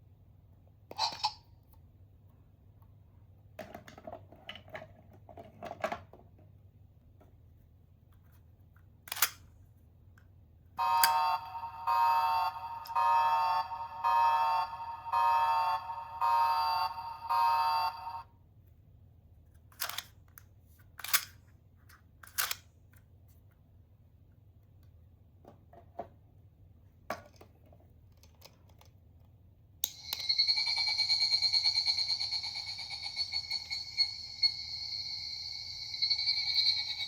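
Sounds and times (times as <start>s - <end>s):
toy alarm-like beeping: 10.8s - 18.3s, 29.9s - 37.0s
warbling electronic tone: 30.0s - 37.0s.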